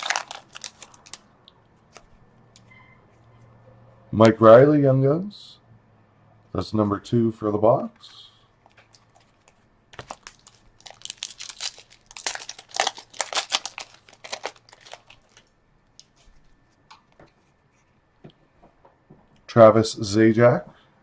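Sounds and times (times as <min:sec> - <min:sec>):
foil wrapper crinkling and tearing: 0:00.0 - 0:01.2, 0:08.8 - 0:16.3.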